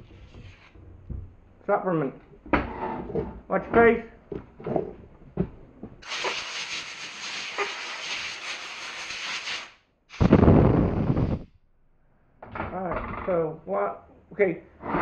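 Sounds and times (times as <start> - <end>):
sandblaster gun hissing: 6.0 - 11.4
rush of air: 10.1 - 11.5.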